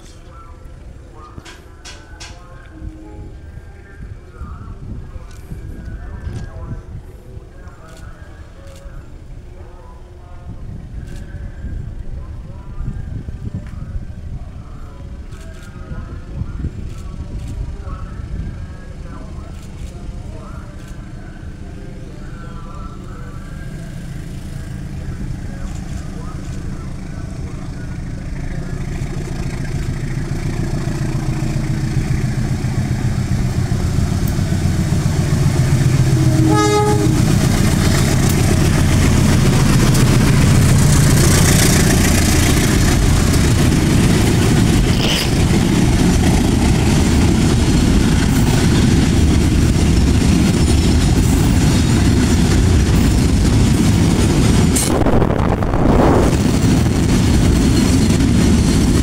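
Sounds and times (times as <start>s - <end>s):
brief horn-like tone: 36.2s - 37.3s.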